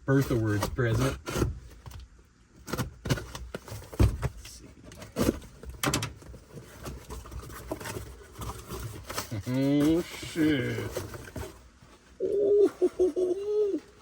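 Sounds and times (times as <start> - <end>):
rustling: 3.2 - 14.0.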